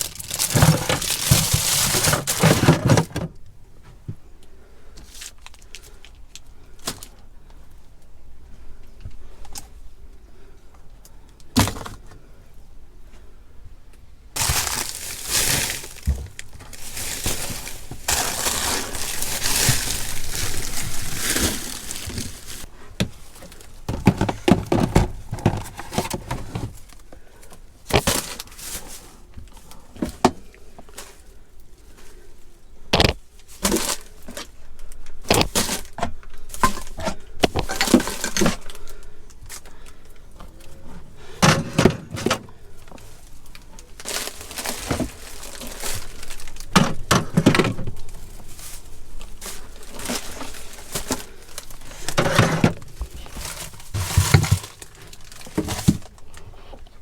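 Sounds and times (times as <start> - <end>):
containers knocking and clinking: 0.0 - 3.3, 23.9 - 26.6, 52.1 - 56.1
rustling: 0.0 - 4.0, 14.4 - 41.4, 42.1 - 57.0.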